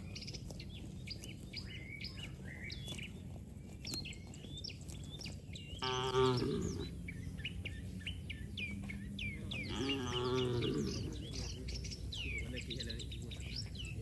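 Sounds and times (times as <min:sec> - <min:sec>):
small birds chirping: 0:00.0 - 0:14.0
cow mooing: 0:05.8 - 0:07.0, 0:09.7 - 0:11.2.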